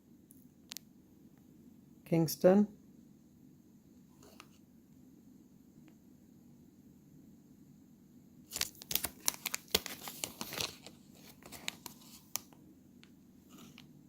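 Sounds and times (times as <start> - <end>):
plastic packaging crinkling: 8.5 - 12.6.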